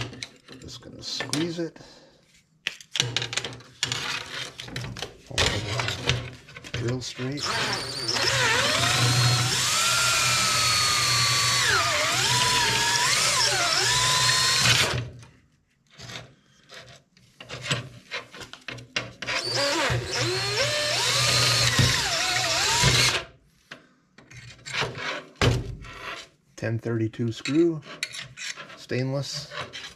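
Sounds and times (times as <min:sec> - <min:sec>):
power drill drilling: 0:07.4 - 0:15.0, 0:19.3 - 0:23.2.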